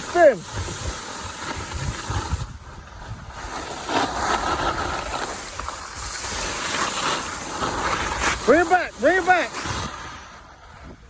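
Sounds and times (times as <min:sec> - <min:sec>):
skis sliding on snow: 0:00.0 - 0:11.0
wind rushing over microphone: 0:01.6 - 0:03.6.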